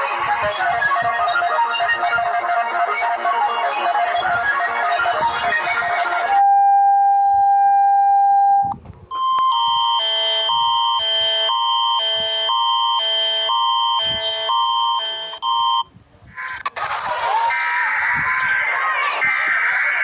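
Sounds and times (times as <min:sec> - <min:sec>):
music: 0:00.0 - 0:06.3
steady electronic beep tone: 0:06.4 - 0:15.9.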